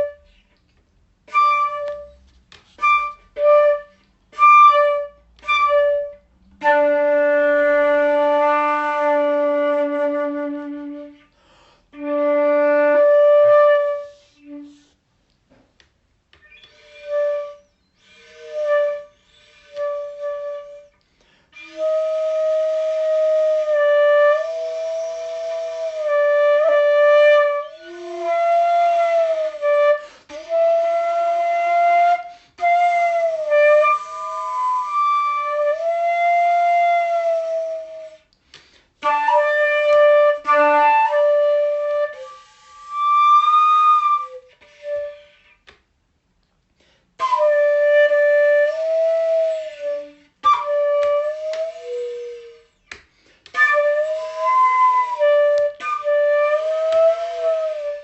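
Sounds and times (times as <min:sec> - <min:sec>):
solo flute-like wind instrument: 0:00.0 - 0:00.4, 0:01.2 - 0:15.0, 0:16.4 - 0:38.4, 0:39.0 - 0:45.7, 0:47.2 - 0:58.0.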